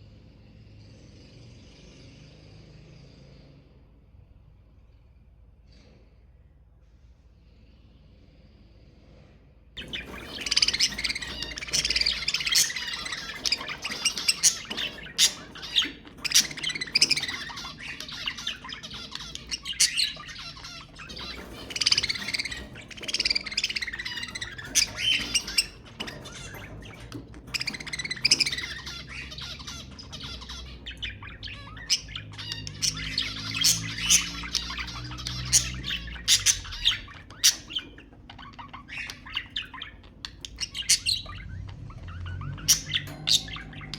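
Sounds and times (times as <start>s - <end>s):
budgerigars chattering and squawking: 9.0s - 43.9s.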